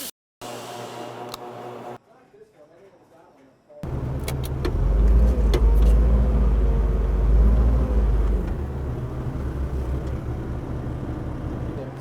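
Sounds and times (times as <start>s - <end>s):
heavy machine engine humming: 3.8s - 11.8s.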